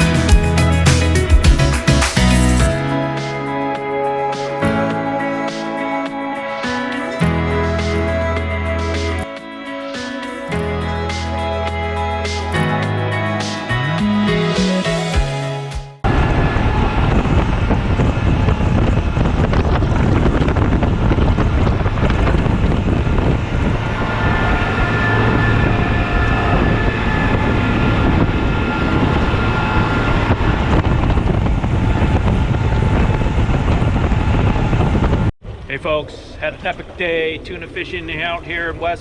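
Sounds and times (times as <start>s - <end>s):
boat engine: 10.6s - 37.0s
wind buffeting microphone: 16.0s - 39.0s.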